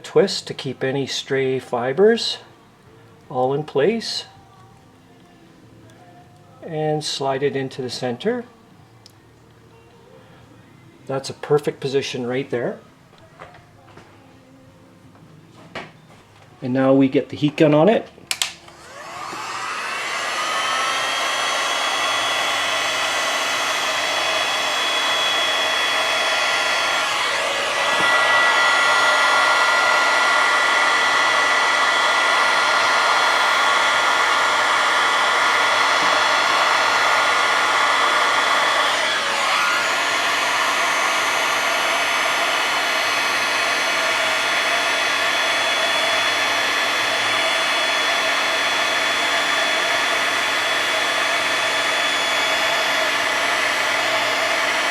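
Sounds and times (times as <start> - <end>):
heat gun blowing: 18.3 - 54.9.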